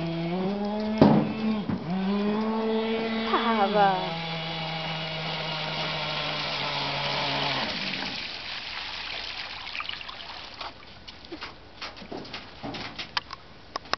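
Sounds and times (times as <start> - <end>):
model engine running: 1.8 - 8.2
water hiss: 4.6 - 10.8.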